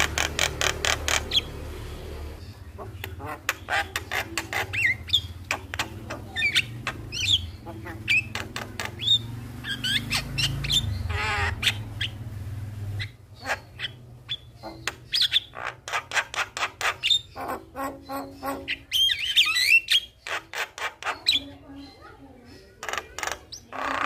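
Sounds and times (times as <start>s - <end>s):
myna clicks and squawks: 0.0s - 12.3s, 13.0s - 24.0s
bird whistles and trill: 13.0s - 22.1s.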